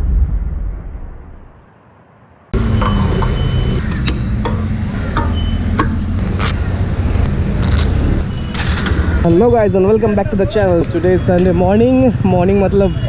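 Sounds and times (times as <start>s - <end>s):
deep boom: 0.0s - 1.6s
vehicle low rumble: 0.0s - 11.7s.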